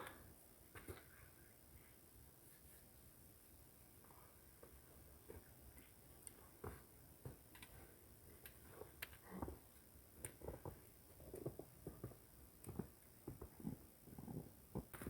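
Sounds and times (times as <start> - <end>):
faint small clicks and knocks: 4.6 - 13.7.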